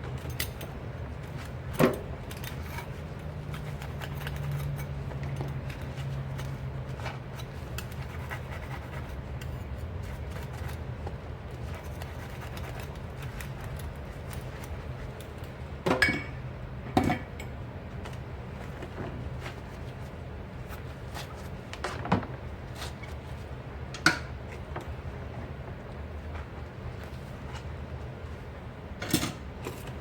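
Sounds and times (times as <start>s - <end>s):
dishes and cutlery clinking: 15.9s - 16.4s.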